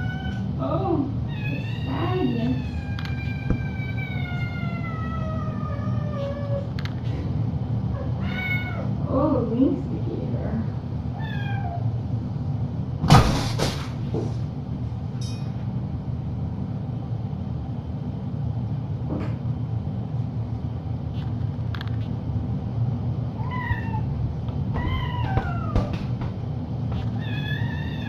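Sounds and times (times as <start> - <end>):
steady low hum: 0.0 - 28.0
cat meowing: 1.3 - 6.7, 8.1 - 8.9, 11.2 - 11.8, 23.4 - 24.1, 24.8 - 25.9, 27.0 - 28.0.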